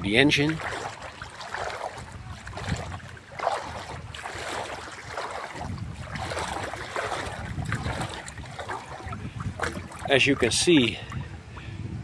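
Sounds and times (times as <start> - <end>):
water washing around boat: 0.0 - 11.7
wind buffeting microphone: 0.0 - 12.0.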